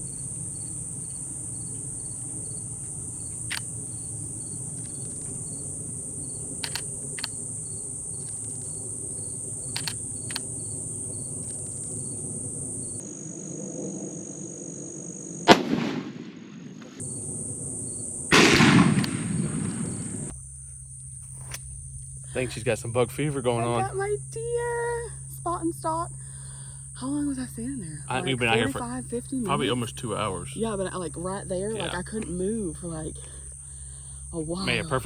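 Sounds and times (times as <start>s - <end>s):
faint ticks: 0.0s - 12.3s
crickets and insects droning: 0.0s - 35.0s
rifle shot: 15.4s - 17.0s, 18.3s - 20.3s
loud bang: 15.5s - 17.0s, 18.3s - 20.3s.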